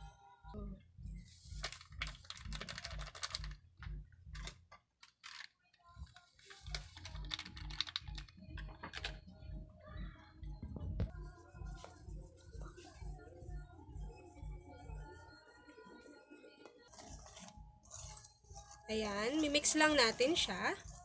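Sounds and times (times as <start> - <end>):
background music: 0.0 - 21.0
plastic sachets crinkling and tearing: 1.5 - 3.6, 4.4 - 9.2.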